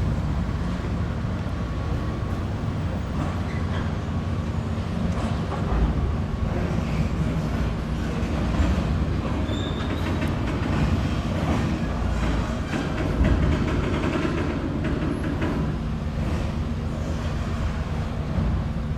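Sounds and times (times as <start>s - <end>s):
train carriages rumbling: 0.0s - 18.9s
train wheel clatter: 0.0s - 18.9s.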